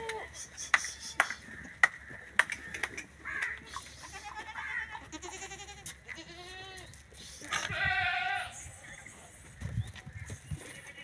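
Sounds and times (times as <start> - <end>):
sharp clicks: 0.7 - 3.6
goat kids bleating: 3.2 - 8.6, 10.6 - 11.0.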